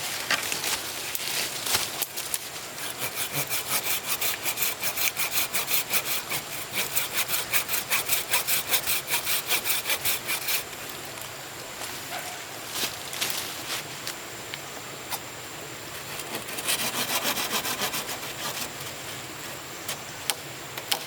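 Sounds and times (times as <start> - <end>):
hand saw cutting wood: 2.8 - 10.7, 16.2 - 18.8.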